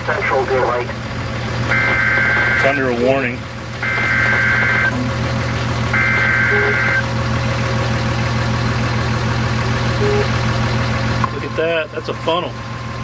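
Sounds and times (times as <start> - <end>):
vehicle engine and road hum: 0.0 - 13.0
electronic two-tone beeps: 6.0 - 7.0, 10.0 - 10.3.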